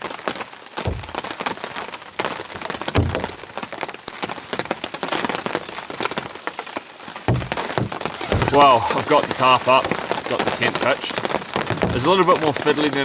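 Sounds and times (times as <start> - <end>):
dull low thumps: 0.9 - 1.5, 3.0 - 3.6, 7.3 - 10.2.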